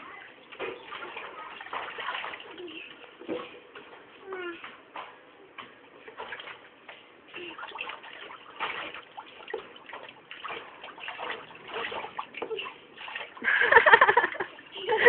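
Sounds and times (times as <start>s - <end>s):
water splashing in a tub: 0.6s - 2.9s, 6.1s - 6.7s, 7.3s - 14.9s.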